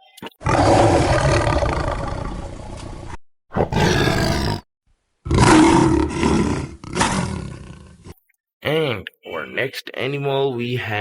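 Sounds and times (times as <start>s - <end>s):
lion roaring: 0.4s - 4.6s, 5.3s - 8.2s.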